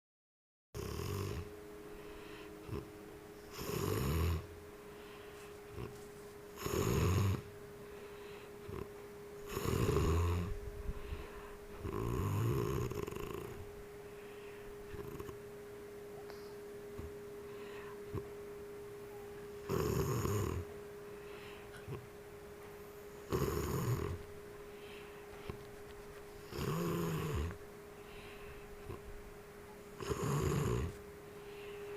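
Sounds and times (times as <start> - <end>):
person snoring heavily: 0.8 - 1.5, 2.2 - 2.9, 3.5 - 6.0, 6.6 - 7.5, 8.2 - 10.5, 11.1 - 13.6, 14.9 - 15.4, 19.7 - 20.7, 23.2 - 24.2, 26.4 - 29.0, 30.0 - 31.8.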